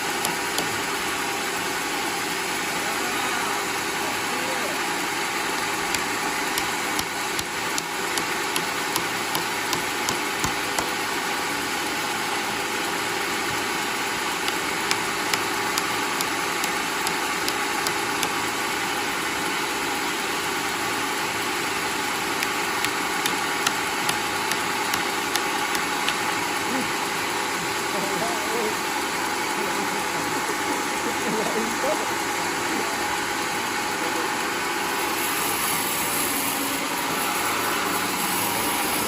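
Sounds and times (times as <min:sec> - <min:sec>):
sawmill motor and blade running: 0:00.0 - 0:39.0
sharp ticks: 0:05.9 - 0:10.9.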